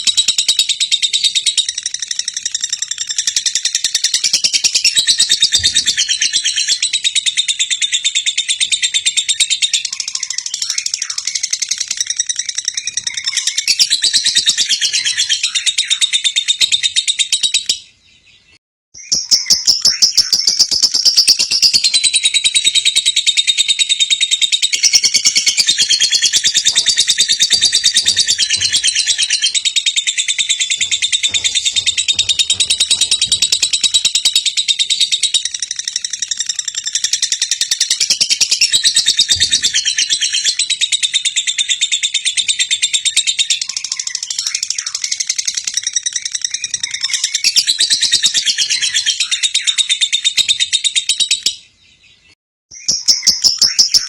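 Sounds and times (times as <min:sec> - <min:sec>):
bird chattering trill: 0:19.0 - 0:51.5.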